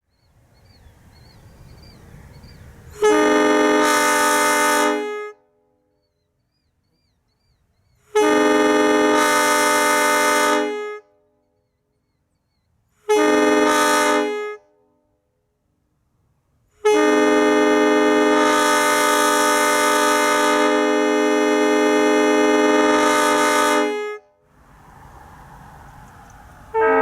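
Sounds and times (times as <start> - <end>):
locomotive air horn blasts: 2.9 - 5.6, 8.0 - 11.3, 13.0 - 14.8, 16.7 - 24.4, 26.7 - 27.0.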